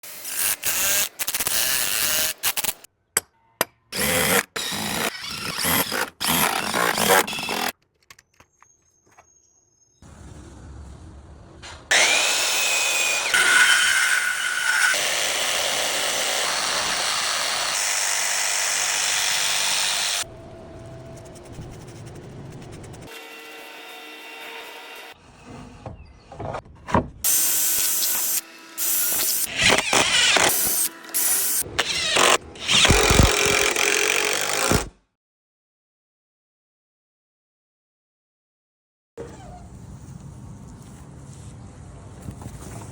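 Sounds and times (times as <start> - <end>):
power tool whining: 4.0 - 7.7, 11.9 - 20.2.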